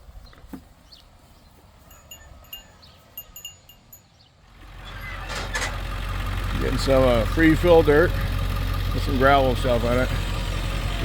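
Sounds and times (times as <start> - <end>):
metallic chimes tinkling: 1.9 - 4.2
tractor engine running: 4.4 - 11.0.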